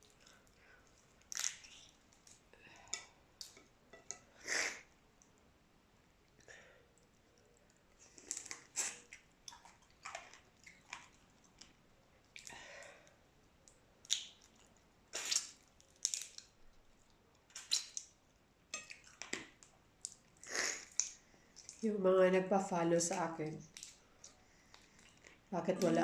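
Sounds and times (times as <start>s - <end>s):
person chewing food: 23.7s - 25.5s.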